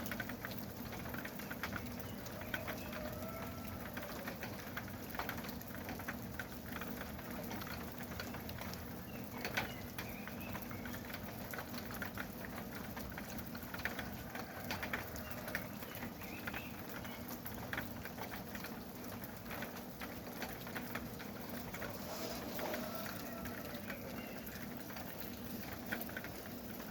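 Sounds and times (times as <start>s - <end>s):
rain pattering in forest: 0.0s - 26.9s
birds calling: 8.2s - 11.5s, 14.6s - 17.8s, 21.2s - 26.2s.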